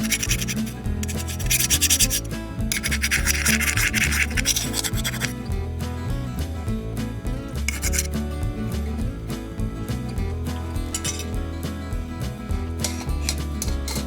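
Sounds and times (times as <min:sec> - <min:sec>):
scraping or rubbing: 0:00.0 - 0:05.4, 0:07.6 - 0:08.2, 0:10.6 - 0:11.4, 0:12.8 - 0:14.0
background music with bass line: 0:00.0 - 0:14.0.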